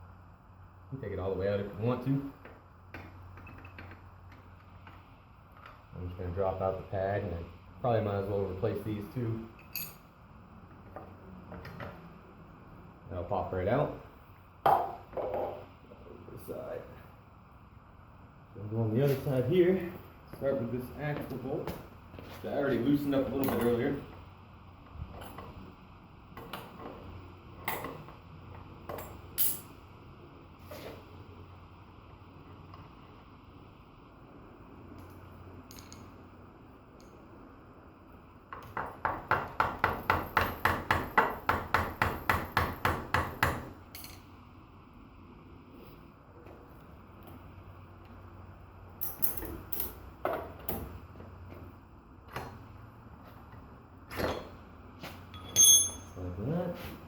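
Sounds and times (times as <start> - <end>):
wrench clinking on metal bolt: 9.6 - 10.0, 55.3 - 56.2.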